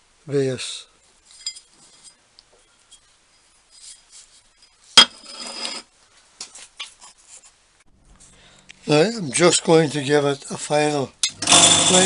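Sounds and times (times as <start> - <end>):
scraping rattle: 11.2 - 12.0.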